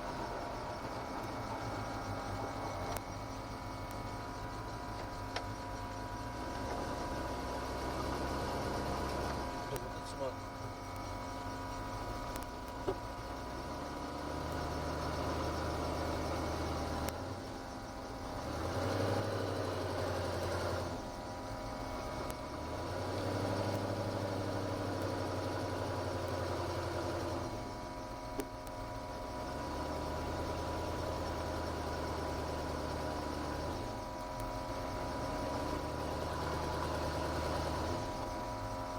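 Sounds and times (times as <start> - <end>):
car engine revving: 0.0 - 38.9.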